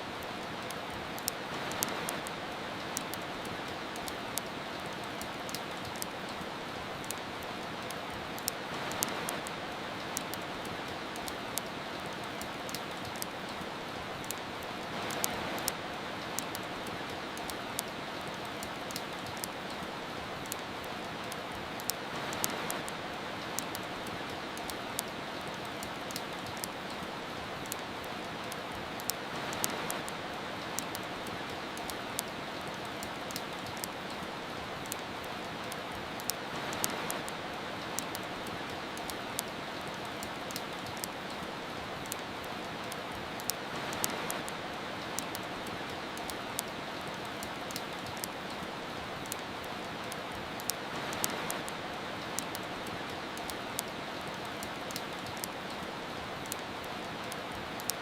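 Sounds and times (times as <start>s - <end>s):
fireplace crackling: 0.0s - 58.0s
rain hiss: 0.0s - 58.0s.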